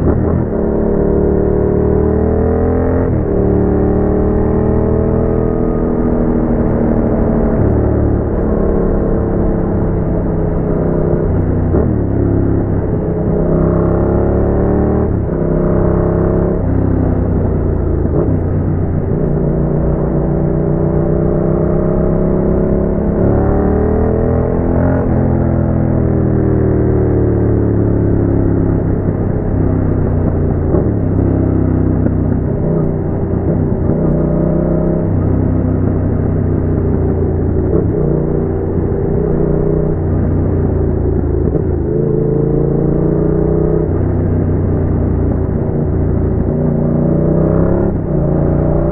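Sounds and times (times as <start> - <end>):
motorcycle engine revving: 0.0 - 48.9.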